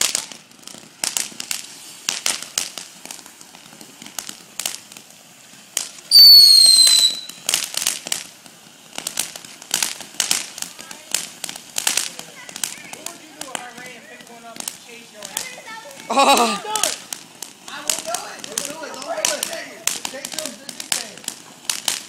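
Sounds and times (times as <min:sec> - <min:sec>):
fireworks crackling and popping: 0:00.0 - 0:22.0
firework whistle: 0:05.8 - 0:08.3.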